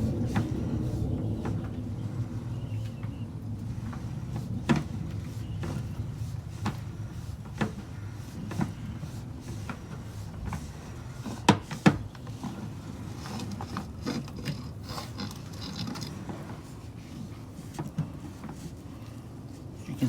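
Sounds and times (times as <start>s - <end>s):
low rumble: 0.0s - 3.9s.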